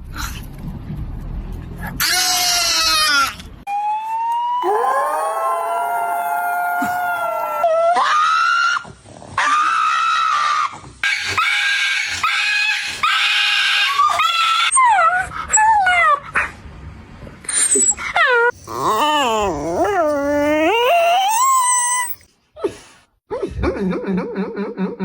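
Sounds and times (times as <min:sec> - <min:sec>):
dog howling: 0:04.6 - 0:08.8, 0:18.3 - 0:22.2
dog yelping: 0:18.2 - 0:22.2.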